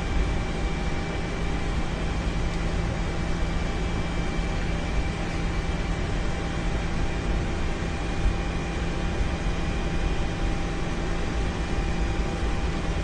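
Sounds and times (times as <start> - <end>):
aircraft engines idling: 0.2 - 8.8.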